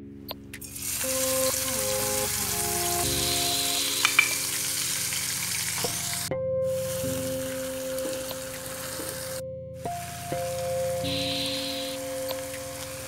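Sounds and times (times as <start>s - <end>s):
hot oil sizzling in a pan: 0.7s - 9.4s.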